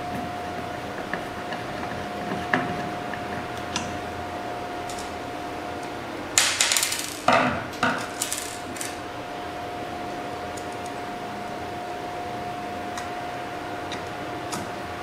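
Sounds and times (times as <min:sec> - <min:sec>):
steady high hum: 0:00.0 - 0:15.0
tools clattering on work surface: 0:04.9 - 0:05.2, 0:06.4 - 0:09.0.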